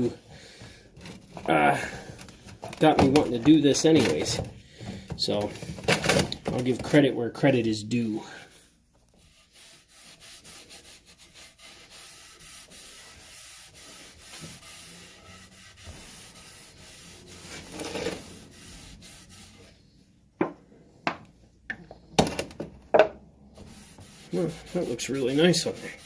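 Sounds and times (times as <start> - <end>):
scratchy rubbing on wood: 9.2 - 19.7, 23.6 - 26.0.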